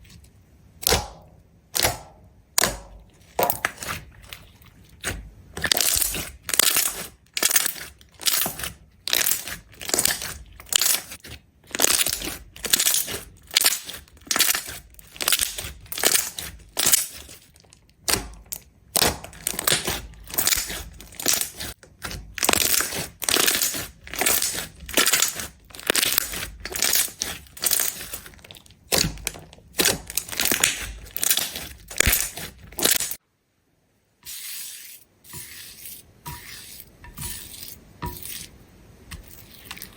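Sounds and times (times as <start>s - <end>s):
crunchy slime being squeezed: 5.6s - 33.2s.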